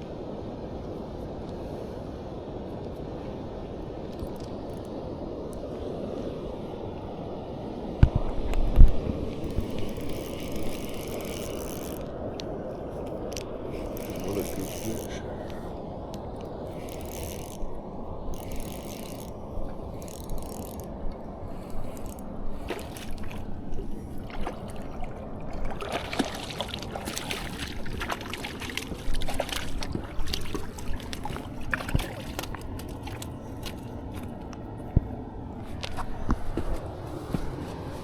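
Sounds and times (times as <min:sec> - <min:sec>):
stream running water: 0:00.0 - 0:38.0
fishing gear clicks and scrapes: 0:09.4 - 0:12.1, 0:13.0 - 0:15.6, 0:16.2 - 0:25.0, 0:25.7 - 0:34.5
rustling pulses: 0:16.5 - 0:34.5.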